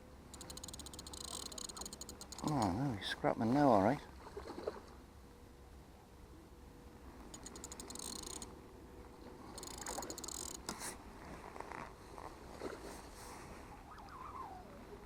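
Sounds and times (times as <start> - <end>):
fishing reel drag clicking: 0.3 - 2.7, 7.3 - 8.5, 9.5 - 10.9.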